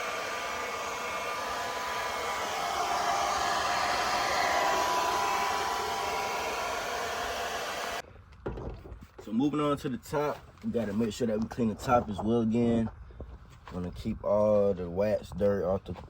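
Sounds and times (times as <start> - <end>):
hair dryer blowing with whine: 0.0 - 8.0.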